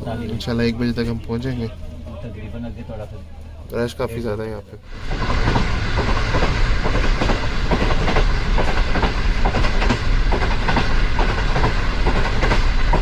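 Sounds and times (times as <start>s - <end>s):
train rumbling on track: 0.0s - 13.0s
wheels clicking over rail joints: 5.1s - 13.0s.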